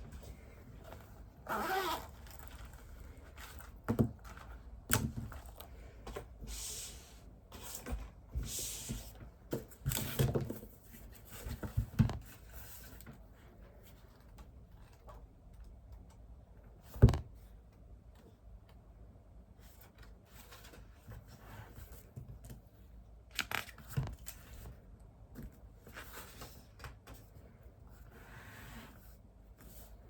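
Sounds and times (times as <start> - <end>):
objects rustling and scraping: 0.0 - 15.2.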